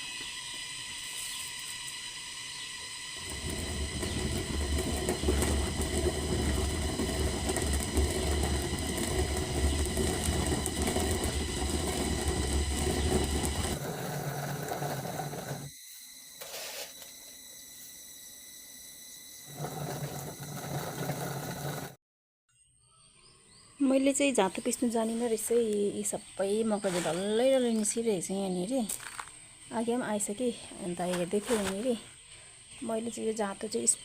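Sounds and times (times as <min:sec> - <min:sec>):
stone quern grinding: 0:03.2 - 0:15.7, 0:19.5 - 0:22.0.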